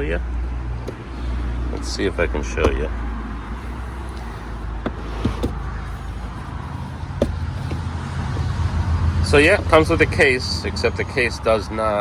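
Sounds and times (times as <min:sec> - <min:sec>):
low rumble of traffic: 0:00.0 - 0:12.0
light clicks and knocks: 0:00.8 - 0:09.8.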